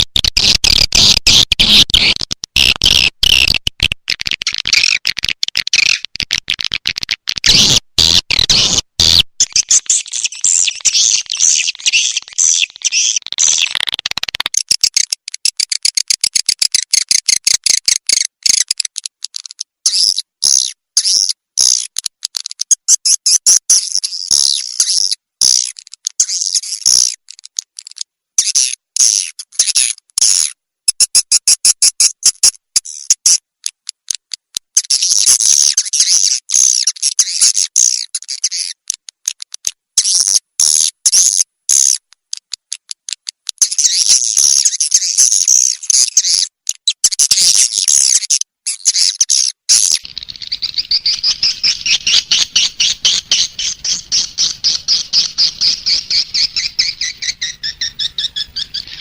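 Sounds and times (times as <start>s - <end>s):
high-pitched bird chirps and twitters: 4.2s - 7.8s, 8.4s - 22.0s, 22.7s - 27.4s, 28.4s - 33.4s, 34.8s - 38.8s, 43.5s - 59.0s.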